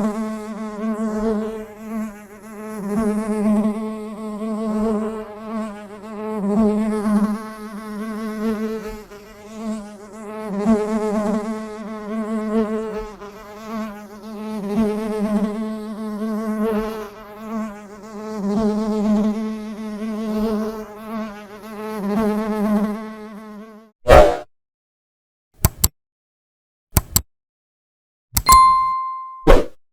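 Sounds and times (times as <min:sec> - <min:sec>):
honeybee buzzing: 0:00.0 - 0:23.9.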